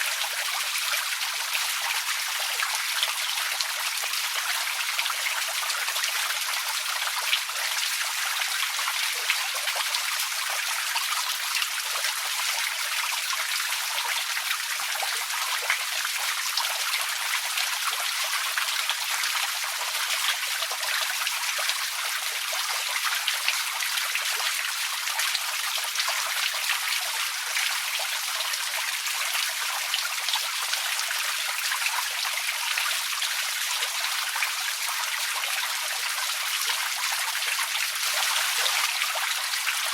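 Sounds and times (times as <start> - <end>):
water fountain splashing: 36.9 - 39.9.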